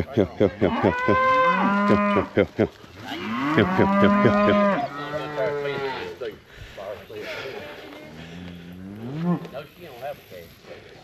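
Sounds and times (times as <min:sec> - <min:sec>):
cattle mooing: 0:00.6 - 0:02.3, 0:03.0 - 0:06.2.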